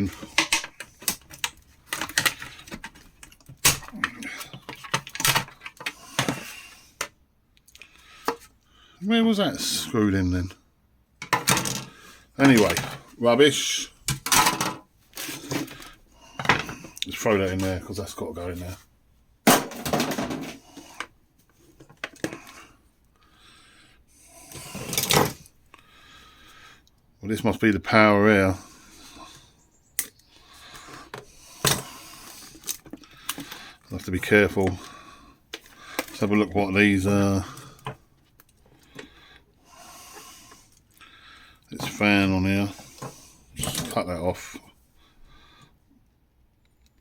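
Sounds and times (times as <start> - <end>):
plastic and metal parts rattling: 0.0 - 7.1, 11.2 - 13.1, 14.1 - 17.8, 19.5 - 21.1, 24.6 - 25.5, 35.5 - 36.4, 43.0 - 44.2
metal part clattering into bin: 11.2 - 13.0, 14.1 - 15.8, 19.5 - 20.6.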